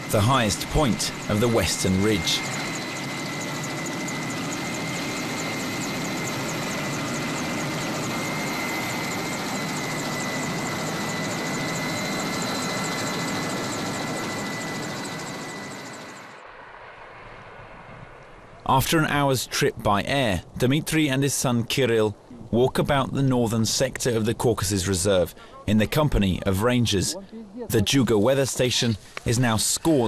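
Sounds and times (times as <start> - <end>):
helicopter engine and rotor: 0.0 - 16.4
high whine: 0.0 - 18.6.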